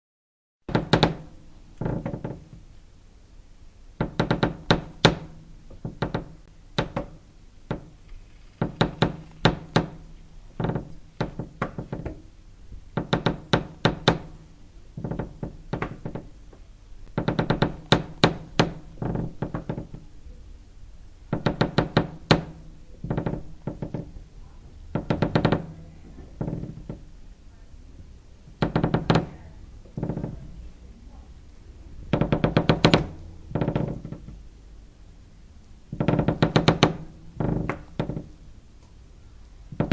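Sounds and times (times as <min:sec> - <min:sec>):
wood creaking: 0:00.7 - 0:02.6, 0:04.0 - 0:12.3, 0:12.9 - 0:20.2, 0:21.3 - 0:24.2, 0:24.9 - 0:27.1, 0:28.5 - 0:30.7, 0:32.0 - 0:34.4, 0:35.9 - 0:38.4, 0:39.7 - 0:39.9.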